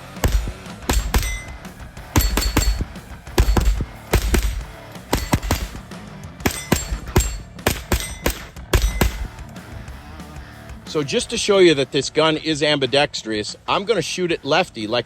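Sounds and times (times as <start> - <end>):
rifle shots: 0.0 - 9.4
steel targets ringing: 0.0 - 9.4.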